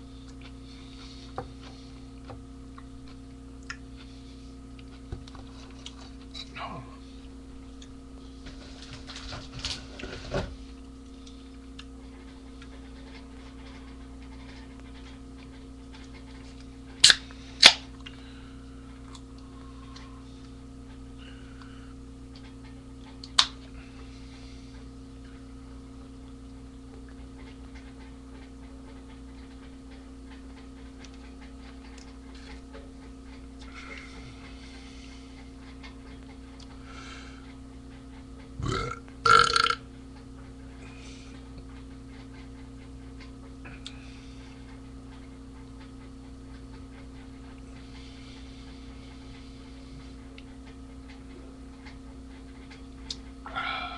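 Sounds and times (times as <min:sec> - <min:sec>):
steady electrical hum: 0:00.0 - 0:53.9
man belching: 0:38.6 - 0:39.8.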